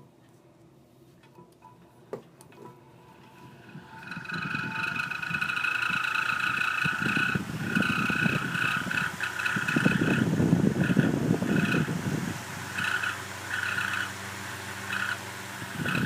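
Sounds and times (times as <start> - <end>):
fan motor rumbling: 0.0 - 16.0
high-pitched bearing squeal: 3.3 - 10.2.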